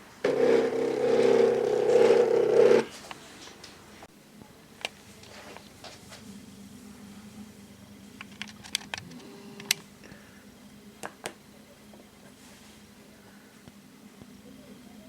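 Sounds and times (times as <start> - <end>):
stepper motor hum: 0.2 - 2.9.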